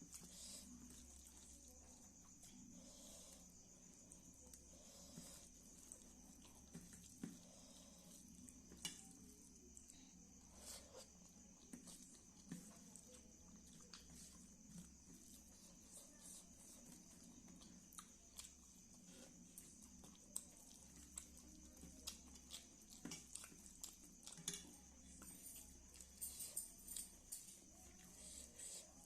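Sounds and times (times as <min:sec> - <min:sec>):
chewing clicks and smacks: 0:16.9 - 0:26.2.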